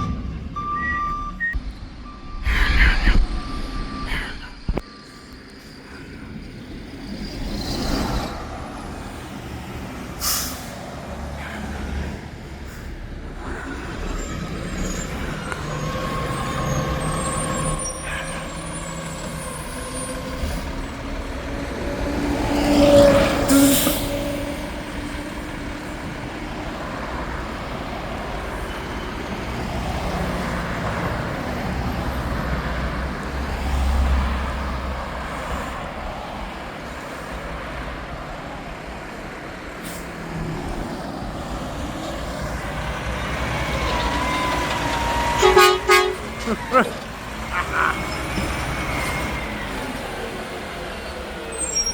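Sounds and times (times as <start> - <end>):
heavy truck engine: 0.0 - 51.9
air brake hiss: 10.2 - 10.8, 23.5 - 24.2.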